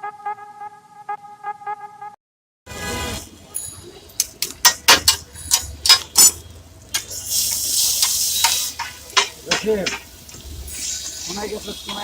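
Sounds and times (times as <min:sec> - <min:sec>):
metal utensil clanking on pan: 0:03.6 - 0:07.2, 0:07.8 - 0:10.2
hot oil sizzling: 0:06.2 - 0:12.0.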